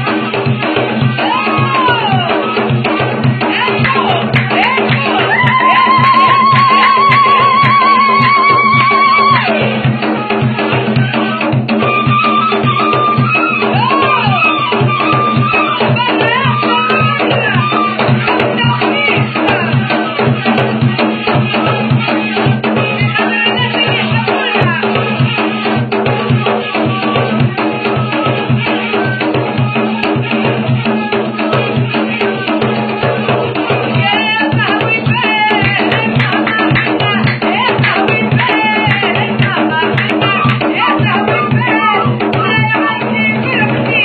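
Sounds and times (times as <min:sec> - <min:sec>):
fast hand-drum beat: 0:00.0 - 0:44.0
reed flute melody: 0:11.8 - 0:18.0.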